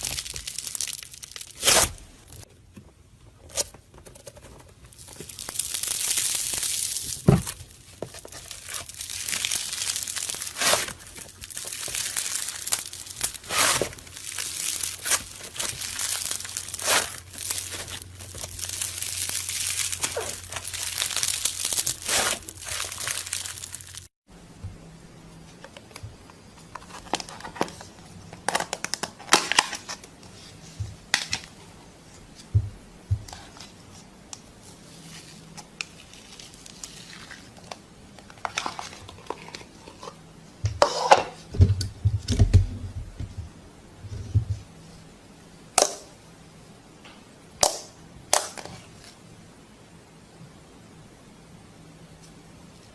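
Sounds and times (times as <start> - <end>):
slime crackling and popping: 0.0 - 2.4, 4.9 - 24.1.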